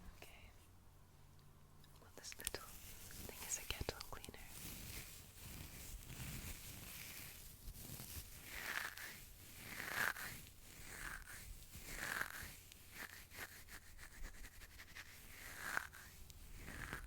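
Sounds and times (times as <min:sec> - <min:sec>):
fingernails scratching on box: 0:05.5 - 0:13.8.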